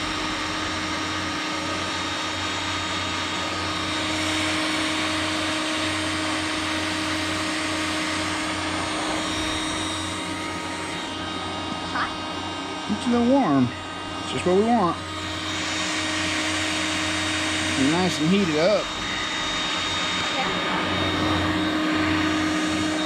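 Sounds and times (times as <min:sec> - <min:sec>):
heat gun blowing with motor hum: 0:00.0 - 0:23.0.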